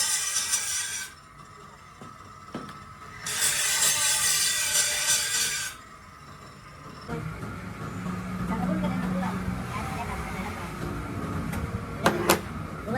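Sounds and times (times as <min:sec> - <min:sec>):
tool scraping on metal: 0:00.0 - 0:07.1.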